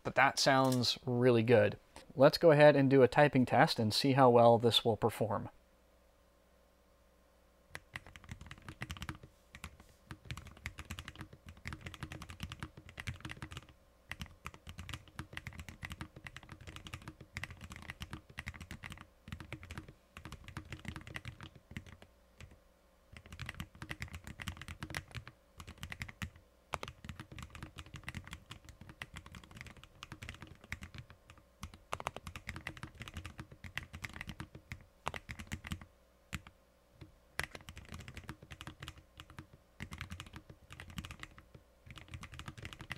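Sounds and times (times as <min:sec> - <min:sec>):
fast typing on mechanical keyboard: 0:07.8 - 0:36.5, 0:37.4 - 0:42.9.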